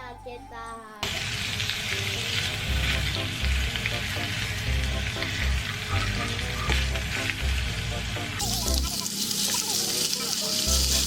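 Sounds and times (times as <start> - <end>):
background music with light melody: 0.0 - 11.0.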